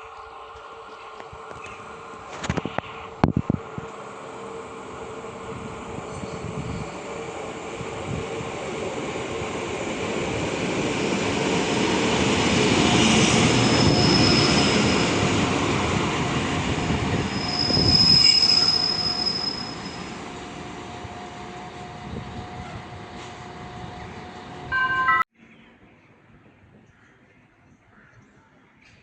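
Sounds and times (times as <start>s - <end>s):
train rumbling past: 0.0s - 25.2s
steel wheels squealing: 13.4s - 15.6s, 17.2s - 20.2s.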